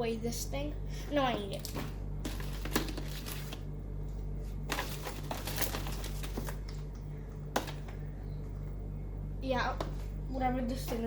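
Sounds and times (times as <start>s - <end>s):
steady low hum: 0.0s - 11.0s
toys and wrappings crinkling: 1.5s - 3.6s, 4.7s - 6.8s.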